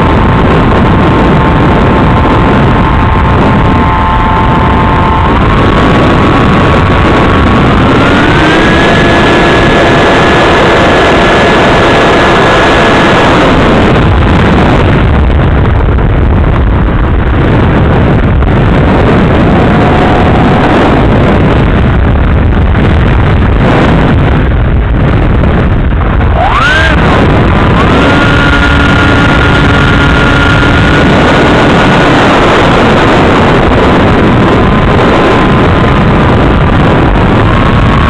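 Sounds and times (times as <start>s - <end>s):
thin motor whine: 0.0s - 15.3s, 26.0s - 33.5s
wind rushing on microphone: 0.0s - 38.0s.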